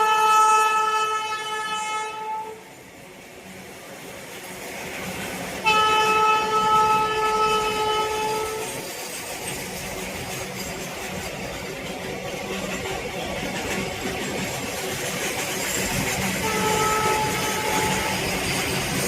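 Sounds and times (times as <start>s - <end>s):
locomotive horn blast: 0.0s - 2.6s, 5.6s - 8.7s, 16.4s - 18.2s
train rolling: 0.0s - 19.0s.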